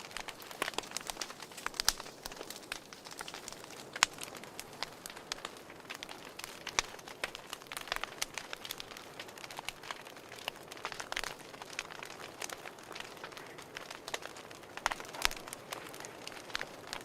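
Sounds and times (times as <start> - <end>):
fire crackling and popping: 0.0 - 17.0
soft steady hiss: 0.0 - 17.0.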